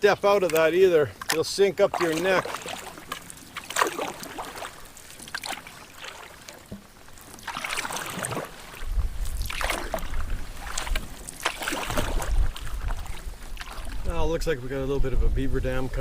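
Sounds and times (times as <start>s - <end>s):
paddle strokes swishing water: 0.0s - 14.6s
low rumble on microphone: 8.8s - 11.0s, 11.9s - 16.0s.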